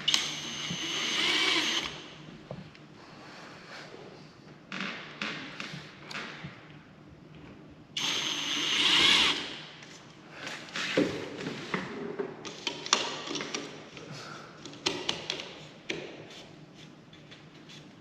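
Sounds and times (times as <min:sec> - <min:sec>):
power drill running: 0:00.1 - 0:02.0, 0:08.0 - 0:09.6.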